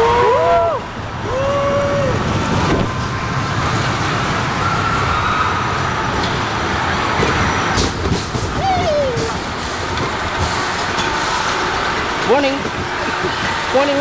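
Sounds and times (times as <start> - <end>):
amusement ride rumbling: 0.0 - 14.0
person shouting: 8.6 - 9.3.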